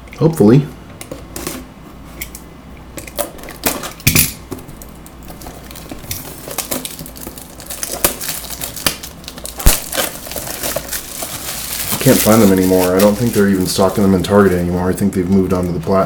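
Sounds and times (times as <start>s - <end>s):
cardboard and wrapper rustling: 5.2s - 15.6s.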